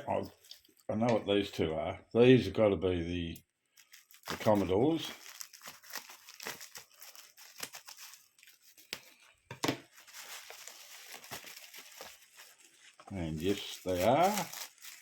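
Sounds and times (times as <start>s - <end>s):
packaging crinkling and tearing: 3.7s - 15.0s.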